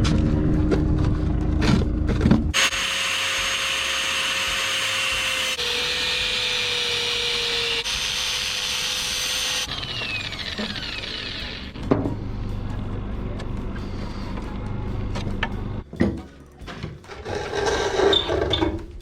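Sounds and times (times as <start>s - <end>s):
power tool whining: 2.6s - 11.8s.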